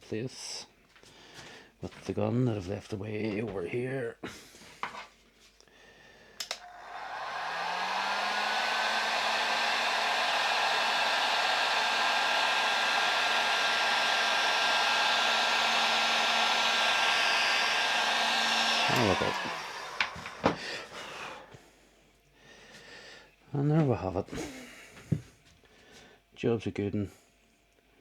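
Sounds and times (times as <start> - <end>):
heat gun switch click: 6.4 - 6.7
heat gun fan blowing: 6.4 - 21.6.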